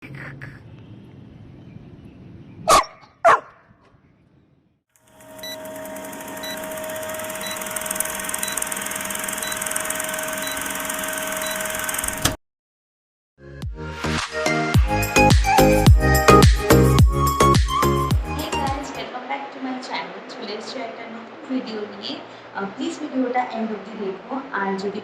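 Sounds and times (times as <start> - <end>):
puppy barking: 2.7 - 3.6.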